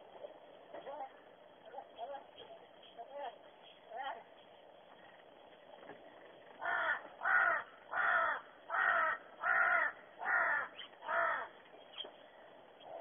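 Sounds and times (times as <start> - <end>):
crow cawing: 6.5 - 11.6.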